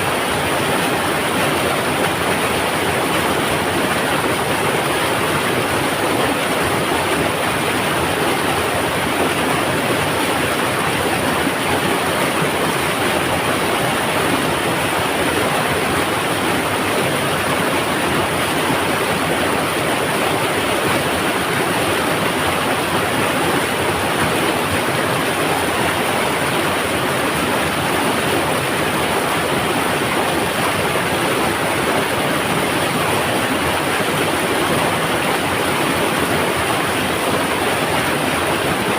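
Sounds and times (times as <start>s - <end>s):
river water rushing: 0.0s - 38.9s.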